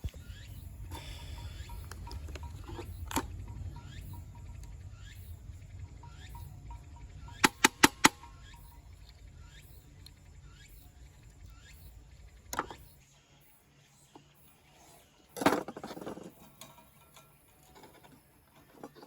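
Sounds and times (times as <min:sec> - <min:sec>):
wood fire crackling: 0:00.0 - 0:10.4
faint chirps: 0:00.0 - 0:19.0
quick loud clicks: 0:07.4 - 0:08.3.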